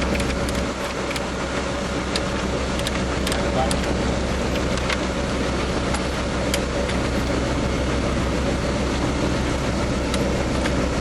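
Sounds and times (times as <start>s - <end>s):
machinery engine idling: 0.0s - 11.0s.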